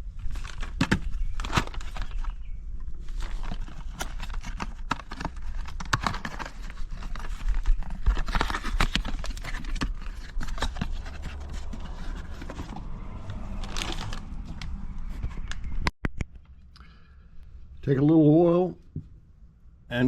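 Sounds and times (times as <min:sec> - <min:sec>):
steady low rumble: 0:10.5 - 0:17.9.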